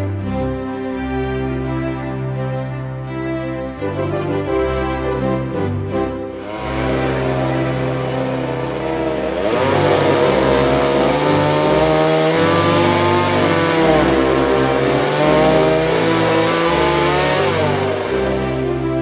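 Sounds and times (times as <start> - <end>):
instrumental christmas music: 0.0 - 19.0
chainsaw revving: 6.4 - 19.0.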